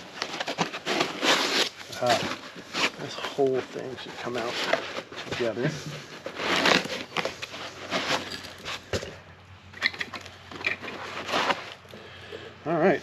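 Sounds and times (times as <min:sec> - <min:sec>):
cardboard rustling and scraping: 0:00.0 - 0:09.2, 0:10.2 - 0:11.9.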